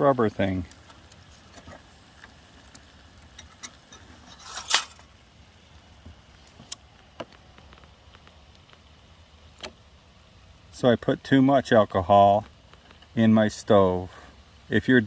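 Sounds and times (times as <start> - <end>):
scrape or rustle: 3.4 - 5.1.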